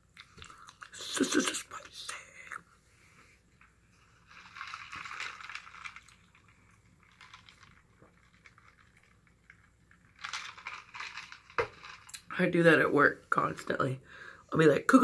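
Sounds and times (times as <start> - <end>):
person chewing food: 0.1 - 0.9
wet crackly mouth clicks: 0.2 - 1.0.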